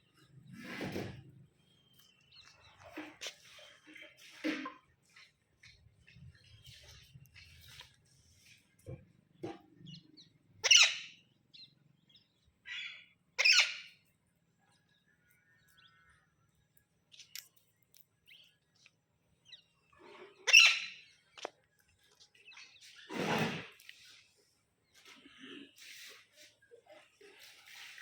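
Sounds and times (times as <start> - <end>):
parrot shrieking: 10.6 - 11.1, 12.7 - 13.9
parrot chirping and squeaking: 10.6 - 11.2, 12.7 - 13.9, 20.3 - 21.2.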